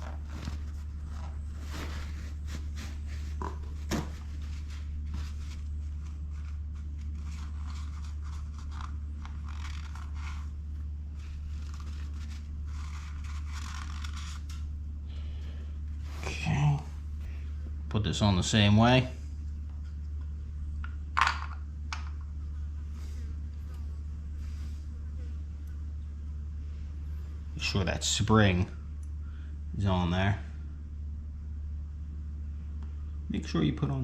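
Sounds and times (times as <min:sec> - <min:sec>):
paper towel rubbing: 0:00.0 - 0:14.7
low hum: 0:00.0 - 0:34.0.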